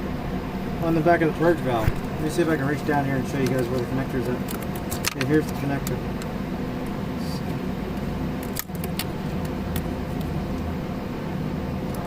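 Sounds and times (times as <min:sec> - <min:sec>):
low mechanical engine hum: 0:00.0 - 0:12.0
sharp clicks and rattles: 0:03.2 - 0:07.0, 0:07.9 - 0:10.7.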